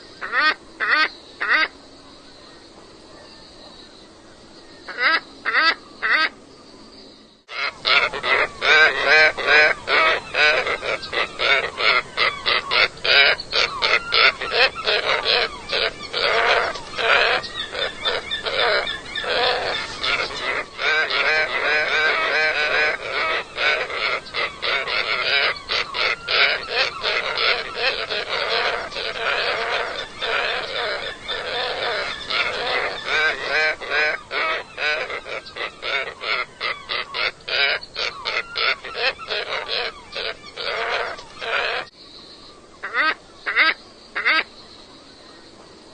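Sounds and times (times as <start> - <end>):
flock of birds calling: 7.5 - 41.9.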